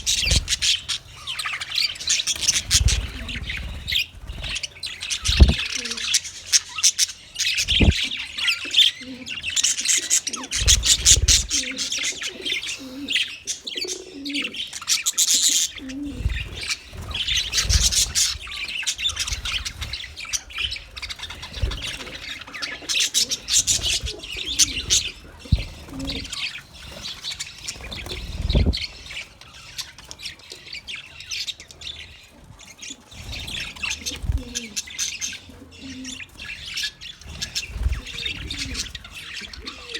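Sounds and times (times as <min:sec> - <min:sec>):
small birds chirping: 0:00.0 - 0:39.9
dull low thumps: 0:05.3 - 0:05.7, 0:07.6 - 0:08.0
low cooing: 0:05.3 - 0:06.1.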